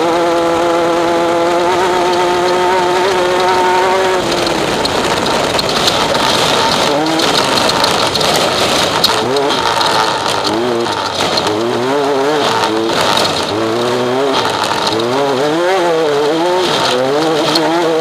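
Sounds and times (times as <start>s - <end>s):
engine revving: 0.0s - 18.0s
vehicle rattling over rough ground: 0.0s - 18.0s.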